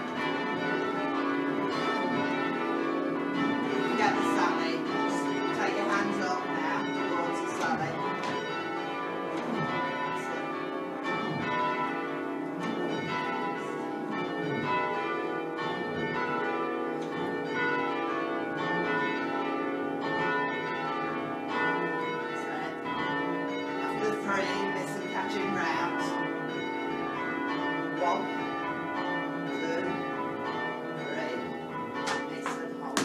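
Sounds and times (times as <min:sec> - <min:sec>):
church bells change ringing: 0:00.0 - 0:33.0.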